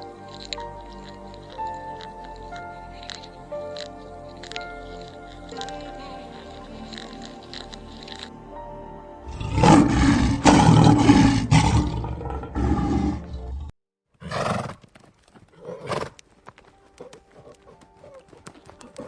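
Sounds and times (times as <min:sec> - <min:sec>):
hooves clopping: 0:00.0 - 0:08.3, 0:14.2 - 0:19.0
horse snorting and whinnying: 0:09.3 - 0:13.6, 0:14.2 - 0:14.8, 0:15.5 - 0:16.2
big cat roaring: 0:09.3 - 0:14.4.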